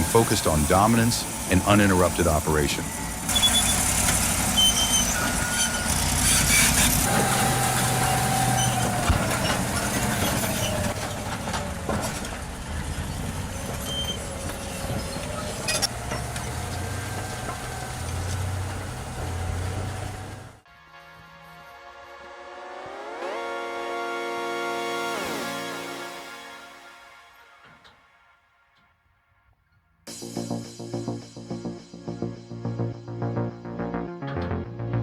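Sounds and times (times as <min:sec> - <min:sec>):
bulldozer diesel engine running: 0:00.0 - 0:20.6
metallic squeals: 0:02.8 - 0:17.2.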